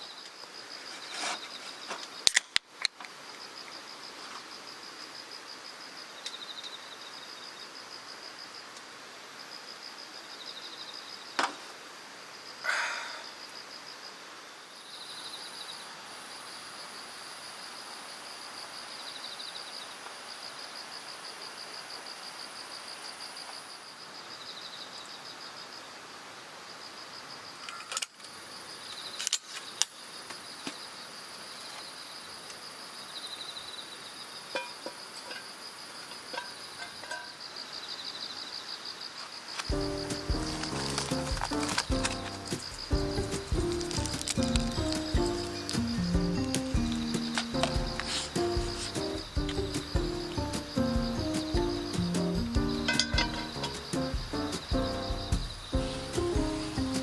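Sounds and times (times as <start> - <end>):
insects trilling: 0.0 - 57.0
sharp knocks: 39.7 - 57.0.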